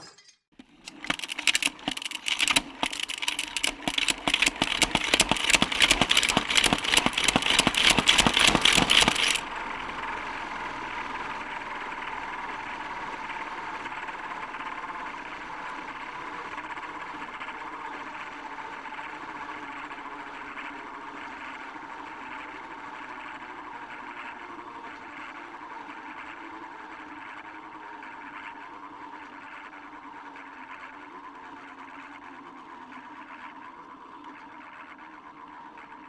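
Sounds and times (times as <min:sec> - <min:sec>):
toy top plunger rattling clicks: 0:00.6 - 0:09.4
spinning top whirring hum: 0:00.6 - 0:17.5.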